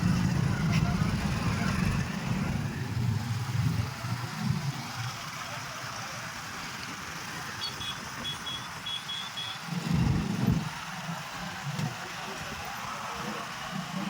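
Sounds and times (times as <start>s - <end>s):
road traffic hum: 0.0s - 14.0s
short high-pitched beeps: 7.6s - 9.6s.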